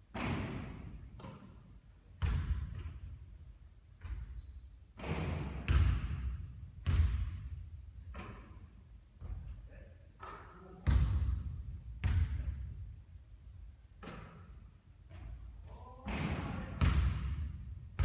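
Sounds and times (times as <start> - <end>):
basketball bouncing on court: 2.2 - 3.1, 4.0 - 4.4, 5.0 - 8.5, 10.8 - 12.7, 16.1 - 18.0
shoe squeaks: 4.3 - 5.0, 6.2 - 6.6, 8.0 - 8.9, 15.6 - 16.8.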